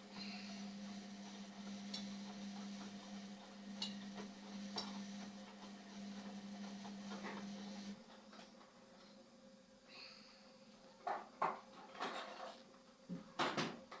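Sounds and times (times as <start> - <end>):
washing machine motor hum: 0.0 - 9.9.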